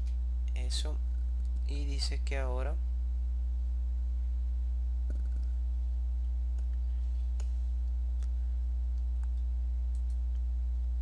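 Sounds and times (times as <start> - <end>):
low electrical hum: 0.0 - 11.0
keyboard and mouse clicks: 5.1 - 5.6, 9.0 - 10.4.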